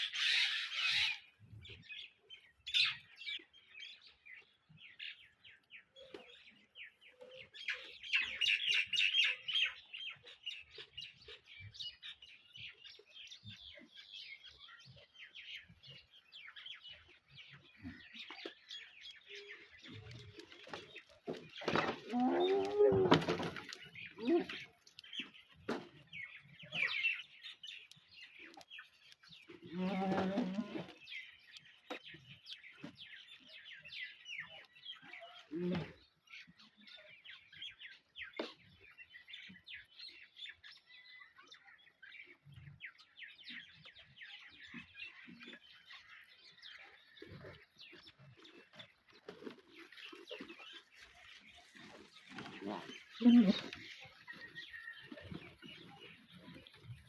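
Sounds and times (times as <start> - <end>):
birds chirping and twittering: 0.0 - 57.0
goats bleating: 29.7 - 31.0.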